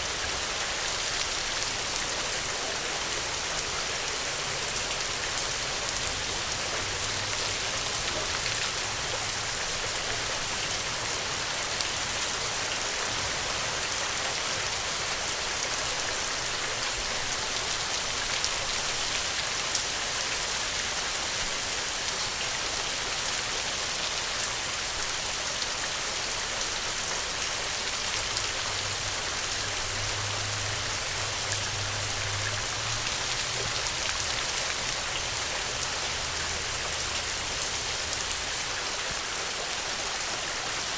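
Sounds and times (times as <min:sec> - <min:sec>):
steady rain falling: 0:00.0 - 0:40.9.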